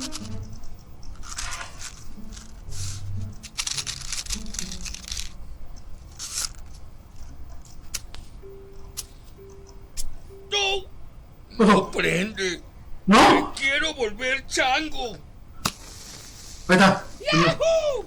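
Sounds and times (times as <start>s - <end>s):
matches scraping on matchbox: 0.0s - 8.4s, 15.6s - 17.5s.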